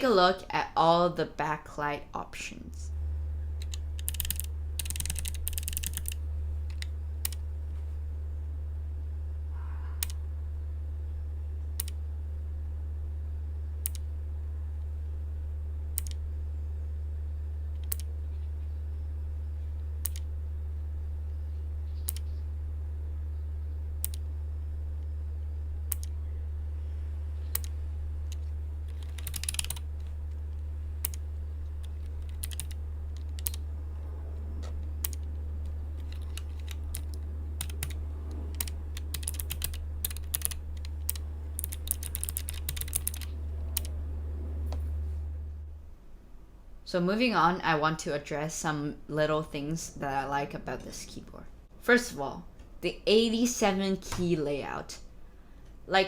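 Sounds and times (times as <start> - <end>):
steady low hum: 0.0 - 56.0
mechanical keyboard keys clicking: 3.6 - 7.4, 28.3 - 29.8, 31.8 - 33.6, 36.0 - 43.9.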